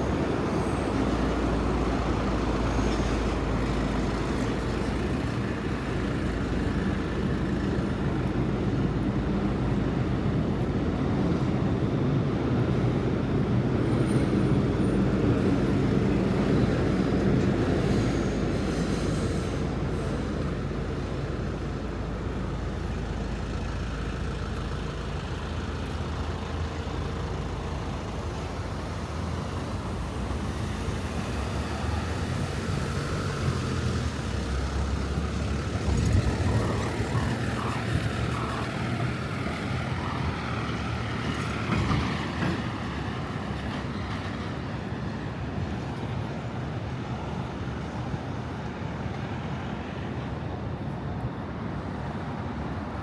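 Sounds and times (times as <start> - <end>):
hum of passing traffic: 0.0 - 53.0
loud vehicle passing: 28.8 - 43.6.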